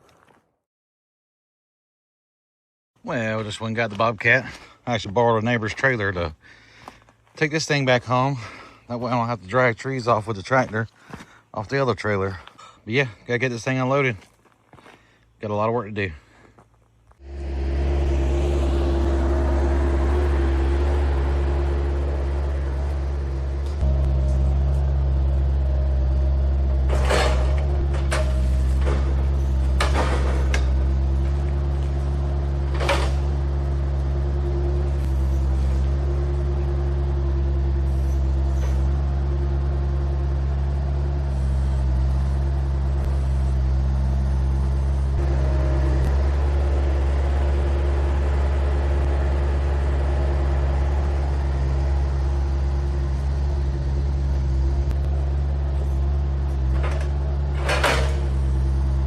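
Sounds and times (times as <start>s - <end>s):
skid steer engine running: 16.2s - 59.0s
sharp metal clanks: 26.8s - 30.9s.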